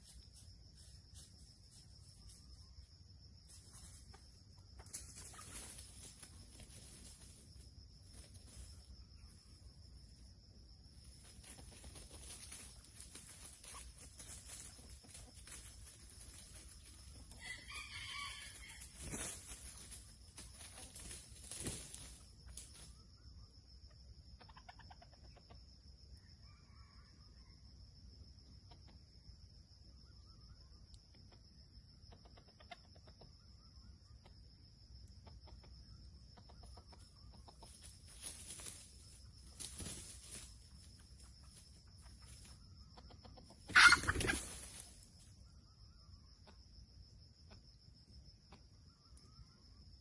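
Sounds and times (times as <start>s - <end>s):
junglefowl clucking: 17.3s - 19.3s, 24.4s - 25.6s, 32.1s - 33.4s, 42.9s - 44.8s
junglefowl call: 43.7s - 44.5s.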